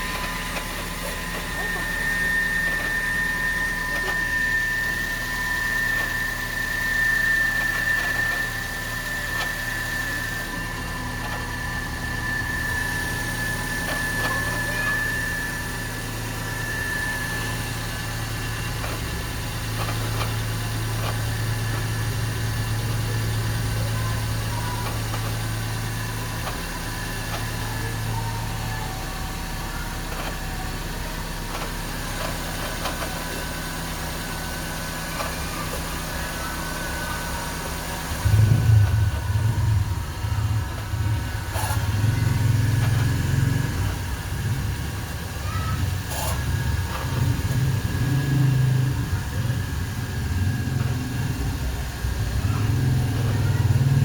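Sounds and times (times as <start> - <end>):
car engine idling: 0.0 - 54.0
engine knocking: 0.0 - 54.0
high whine: 34.9 - 53.0.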